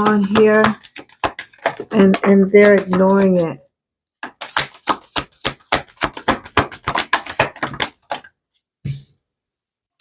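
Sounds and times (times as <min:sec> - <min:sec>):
cards being shuffled: 0:00.1 - 0:03.5, 0:04.2 - 0:08.3.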